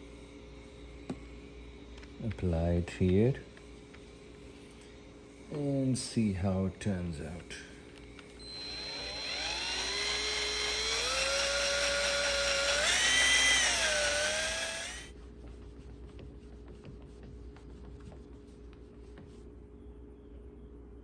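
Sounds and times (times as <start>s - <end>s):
buffing wheel whining: 8.4s - 15.1s.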